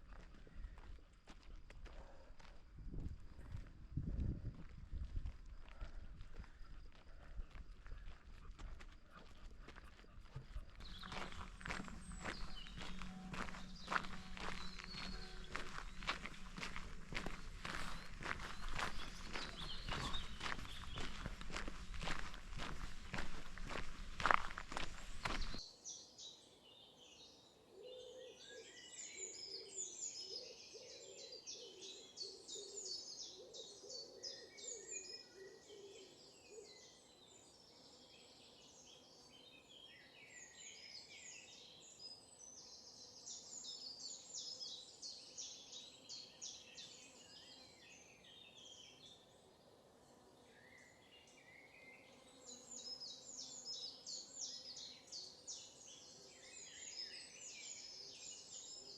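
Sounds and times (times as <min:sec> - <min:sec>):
birds chirping and trilling: 0:10.8 - 0:25.6
low hooting bird call: 0:10.8 - 0:25.6.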